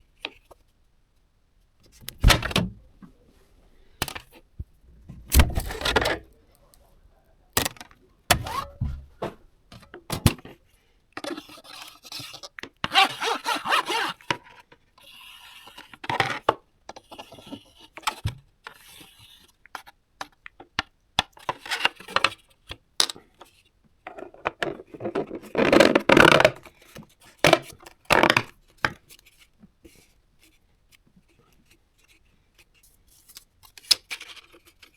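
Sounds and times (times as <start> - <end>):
rubbing and scraping: 8.3 - 9.4.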